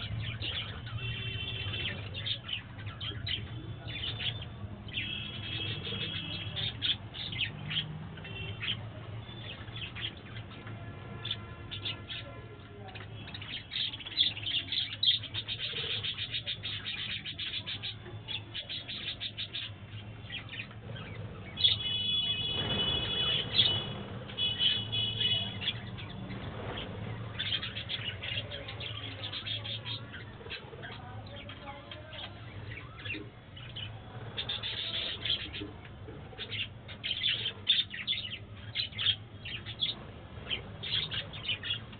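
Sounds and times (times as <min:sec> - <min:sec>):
budgerigars chirping: 0:13.2 - 0:35.7, 0:36.3 - 0:41.9.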